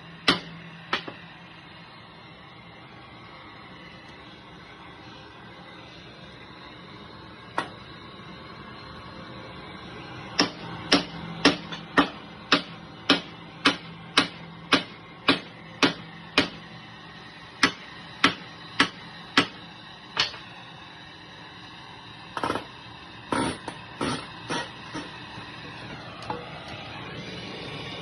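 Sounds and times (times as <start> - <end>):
hammer striking metal: 0.2 - 1.2, 10.3 - 16.6, 17.6 - 19.6.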